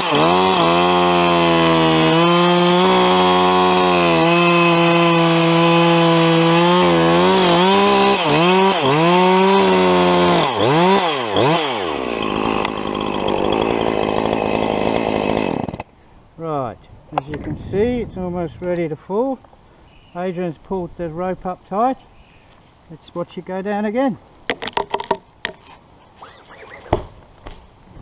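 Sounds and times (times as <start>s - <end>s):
chainsaw cutting at high revs: 0.0s - 15.9s.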